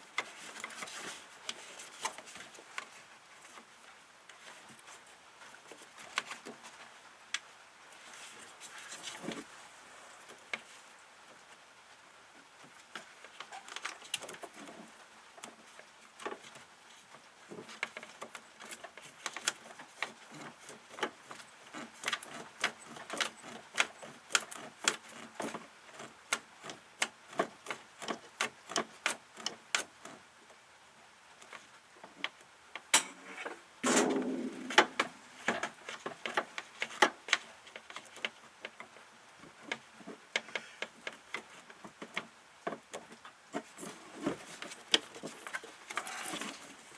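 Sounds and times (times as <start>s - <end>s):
scraping and knocking: 33.4s - 36.5s.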